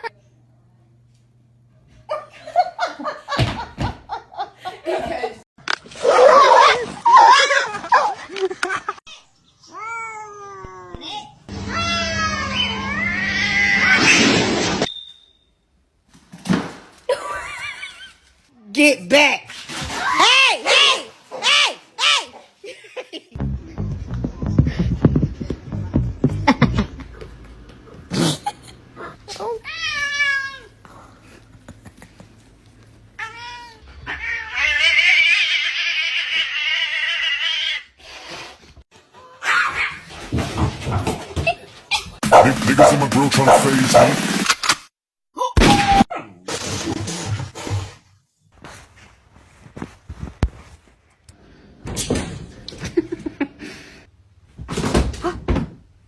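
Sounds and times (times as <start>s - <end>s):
scuffling bursts: 48.6s - 51.2s.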